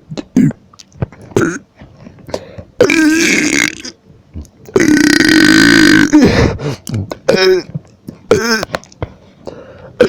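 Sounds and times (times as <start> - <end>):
person burping loudly: 1.3 - 1.7, 2.8 - 4.0, 4.7 - 8.8.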